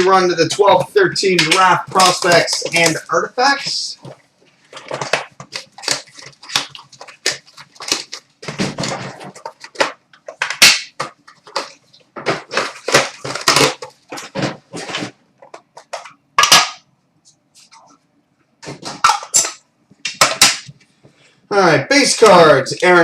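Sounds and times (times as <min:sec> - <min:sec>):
wrappers crinkling and tearing: 0:01.3 - 0:10.0.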